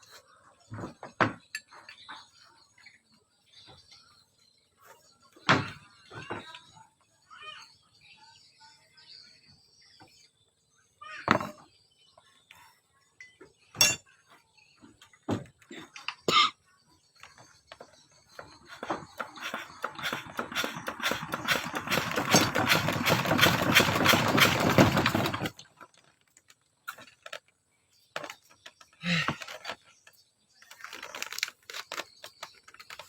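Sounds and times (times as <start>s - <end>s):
machine clattering: 19.4s - 25.6s.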